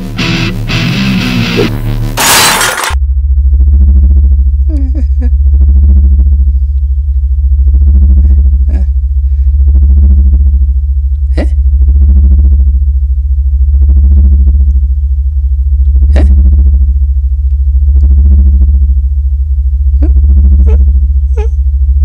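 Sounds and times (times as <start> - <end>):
low electronic hum: 0.0 - 22.0
pulsing synth tone: 19.7 - 22.0.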